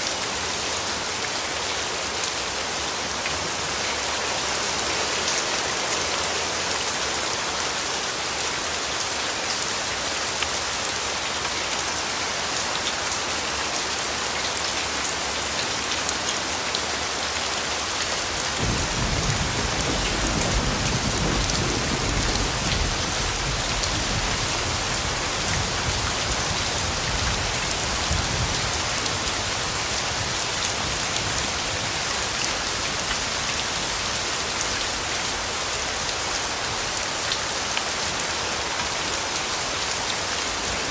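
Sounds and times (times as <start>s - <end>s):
steady rain falling: 0.0s - 40.9s
distant thunder rumble: 18.6s - 24.4s.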